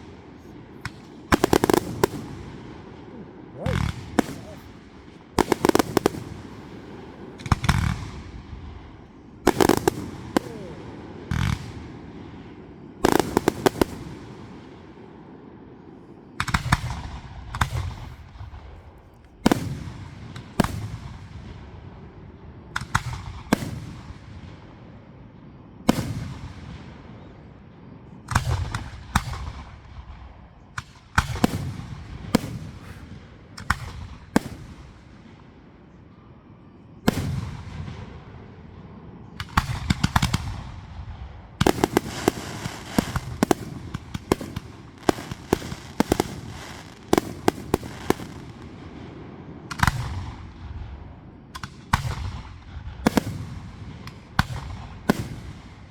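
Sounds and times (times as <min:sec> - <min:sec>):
rumbling echo: 0:00.0 - 0:12.4
fireworks banging: 0:00.0 - 0:14.5, 0:30.8 - 0:34.9, 0:39.3 - 0:40.8, 0:41.5 - 0:50.6.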